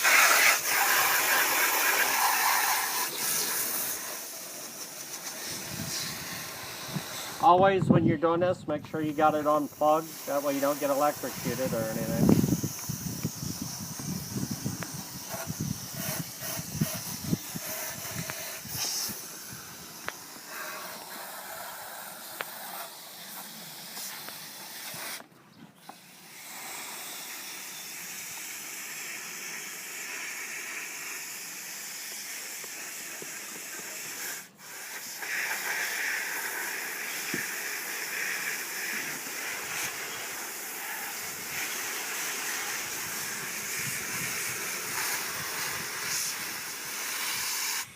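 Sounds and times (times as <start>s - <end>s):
water spraying from a hose: 0.0s - 7.6s, 8.9s - 47.9s.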